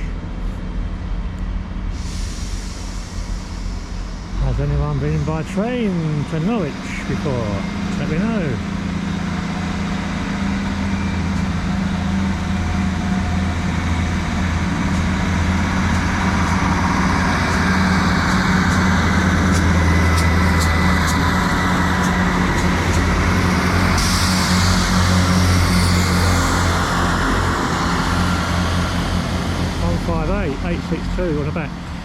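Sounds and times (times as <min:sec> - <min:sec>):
train engine hum: 0:00.0 - 0:32.0
hiss: 0:01.9 - 0:04.4, 0:23.8 - 0:26.8.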